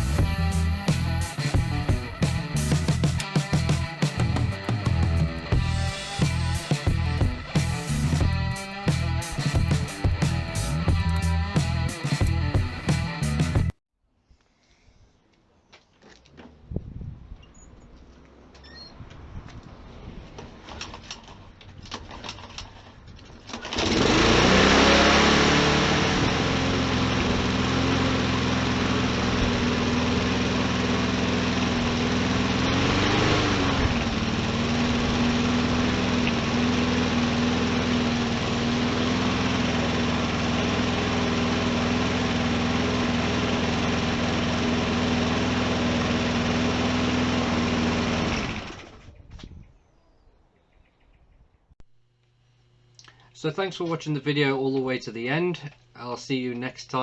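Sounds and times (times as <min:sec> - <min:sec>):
lawnmower engine running: 0:00.0 - 0:13.7, 0:23.7 - 0:49.0.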